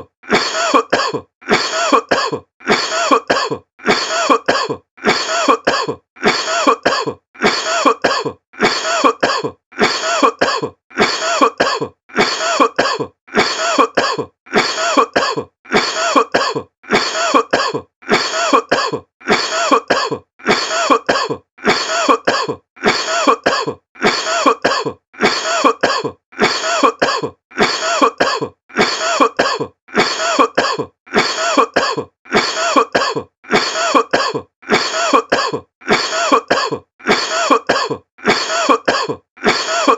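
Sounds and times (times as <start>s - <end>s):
person coughing: 0.0s - 39.9s.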